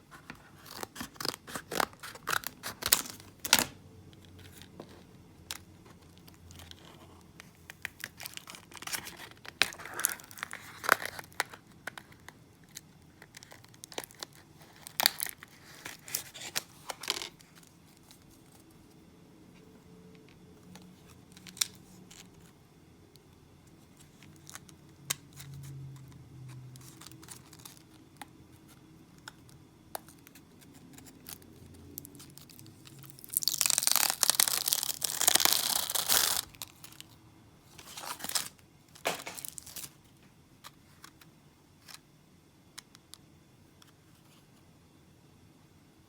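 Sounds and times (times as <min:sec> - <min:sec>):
plastic packaging crinkling: 0:00.1 - 0:03.8, 0:04.4 - 0:18.7, 0:26.8 - 0:28.0, 0:30.0 - 0:40.0.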